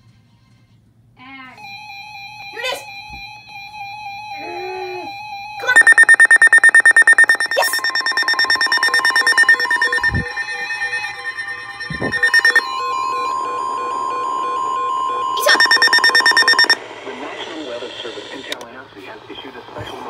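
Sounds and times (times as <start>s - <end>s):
rapid pulsing alarm beep: 5.6s - 16.8s
steady weather radio warning tone: 5.7s - 18.6s.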